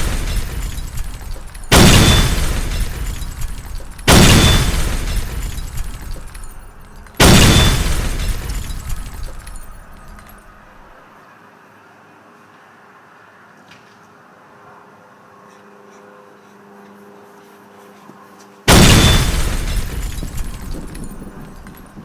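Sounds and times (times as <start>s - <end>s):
crash sound effect: 0.0s - 10.8s, 18.7s - 22.0s.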